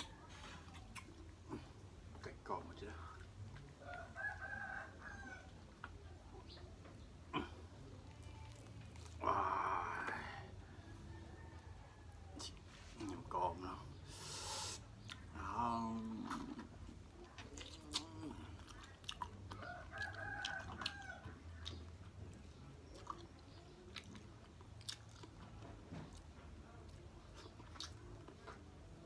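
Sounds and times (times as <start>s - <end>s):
chewing and biting chicken: 0.0s - 2.1s, 7.3s - 9.6s, 14.2s - 29.0s.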